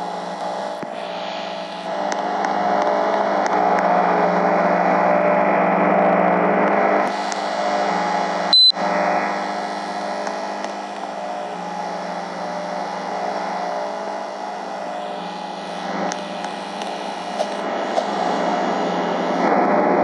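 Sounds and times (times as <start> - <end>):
high-pitched beep: 8.5 - 8.7.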